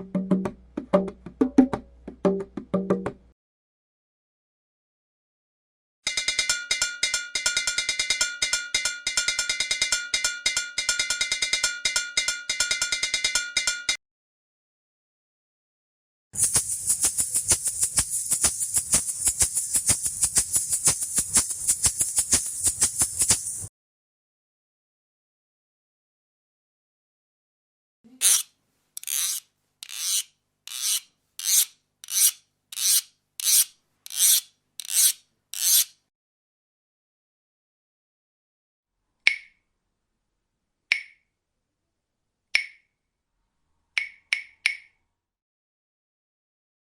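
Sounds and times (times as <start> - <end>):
cowbell struck rhythmically: 6.1 - 14.0
guiro scraped with a stick: 28.1 - 36.0.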